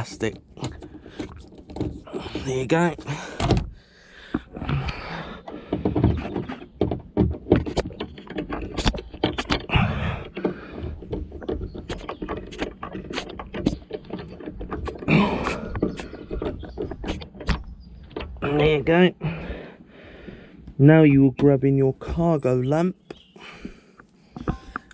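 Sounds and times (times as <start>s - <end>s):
plastic trim clicking and rattling: 0.0s - 18.7s.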